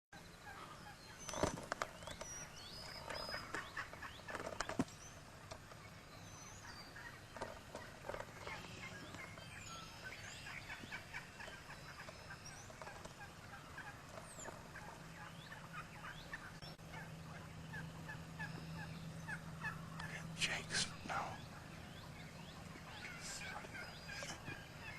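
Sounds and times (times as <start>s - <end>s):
faint small birds chirping: 0.2s - 24.9s
turkeys gobbling: 6.7s - 24.9s.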